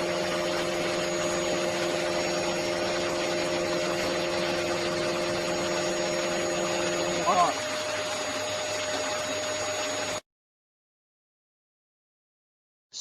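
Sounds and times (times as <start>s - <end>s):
vacuum cleaner running: 0.0s - 10.2s.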